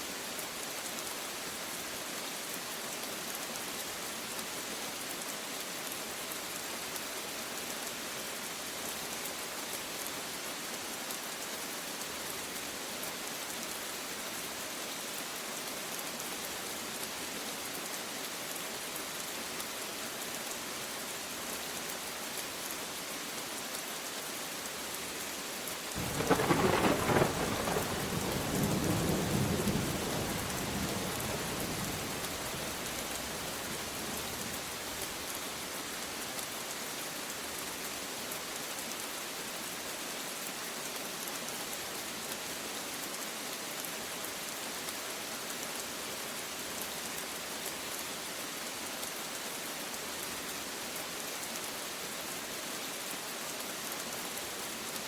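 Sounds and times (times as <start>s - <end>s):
steady rain falling: 0.0s - 55.0s
rumbling thunderclap: 26.0s - 32.5s.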